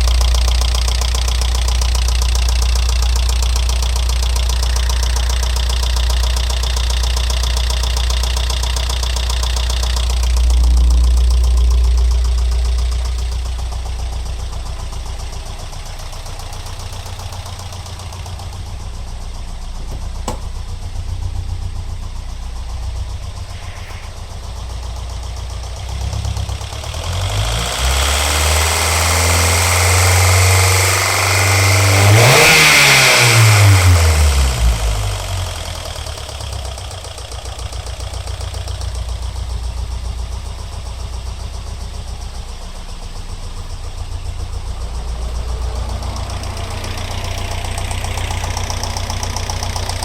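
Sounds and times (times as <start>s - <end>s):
fast rhythmic ticking rattle: 0.0s - 19.7s
car engine idling: 0.0s - 50.0s.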